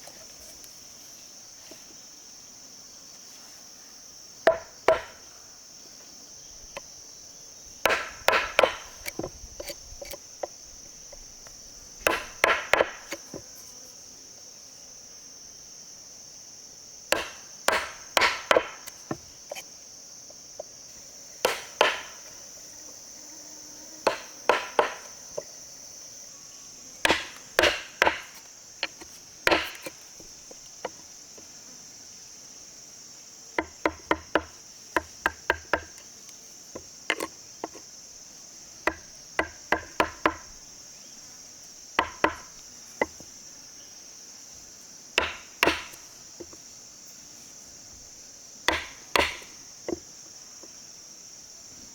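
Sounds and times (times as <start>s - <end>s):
high insect drone: 0.0s - 51.9s
tool knocking on wood: 4.5s - 5.2s, 7.8s - 11.2s, 12.0s - 13.5s, 17.1s - 19.6s, 21.4s - 22.2s, 24.0s - 25.5s, 27.0s - 31.0s, 33.6s - 35.9s, 38.9s - 40.4s, 42.0s - 43.3s, 45.2s - 46.6s, 48.7s - 50.0s.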